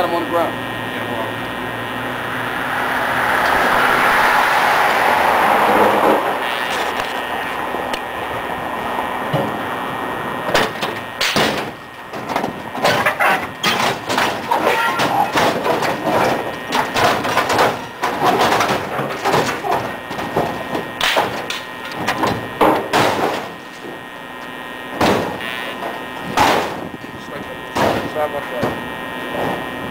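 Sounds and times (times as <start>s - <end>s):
metal appliances scraping and clanging: 10.6s - 24.0s.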